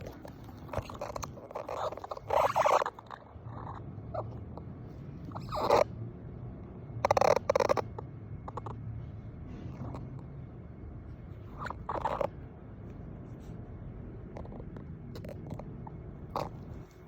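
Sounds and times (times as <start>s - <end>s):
dog rubbing and squeaking on surface: 0.0s - 4.4s, 5.3s - 5.8s, 11.4s - 12.3s, 16.3s - 17.0s.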